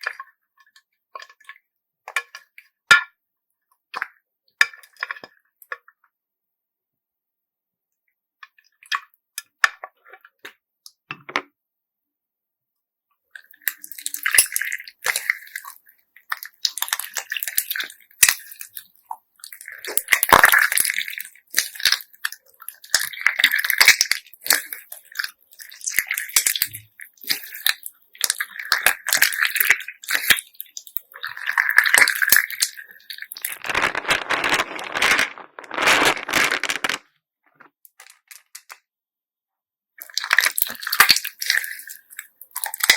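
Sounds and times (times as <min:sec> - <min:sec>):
slime squelching: 0:13.4 - 0:37.0, 0:40.0 - 0:42.9
beads clicking: 0:33.4 - 0:37.0.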